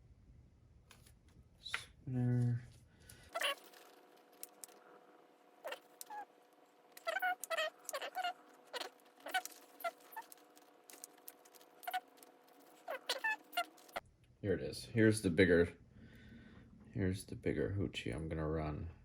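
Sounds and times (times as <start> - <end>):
plastic bags and lures rustling: 2.8 - 5.0, 6.9 - 14.0.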